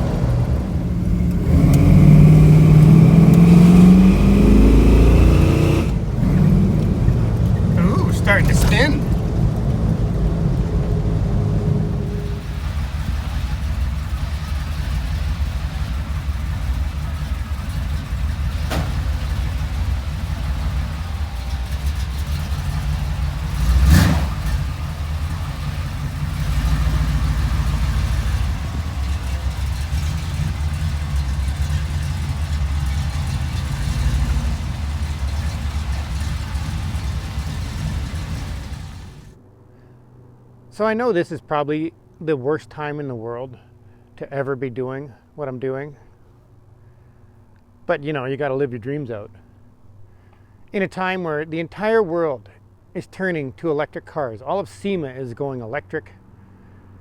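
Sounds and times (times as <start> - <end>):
truck engine rumbling: 0.0 - 39.4
sharp thump: 18.6 - 19.2.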